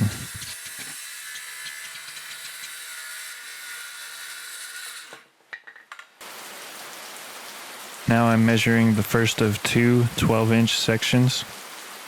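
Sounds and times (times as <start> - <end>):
circular saw whining: 0.0 - 5.3
steady hiss: 6.2 - 12.0.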